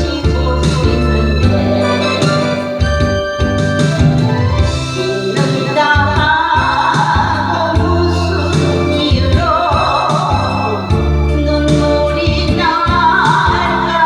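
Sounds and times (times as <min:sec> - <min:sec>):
held bass notes: 0:00.0 - 0:14.0
keyboard accompaniment: 0:00.0 - 0:14.0
person singing with vibrato: 0:00.0 - 0:14.0.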